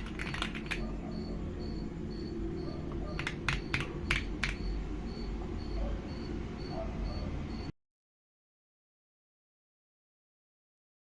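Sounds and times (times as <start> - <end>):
mechanical keyboard keystrokes: 0.0 - 0.9, 3.1 - 4.6
steady low hum: 0.0 - 7.7.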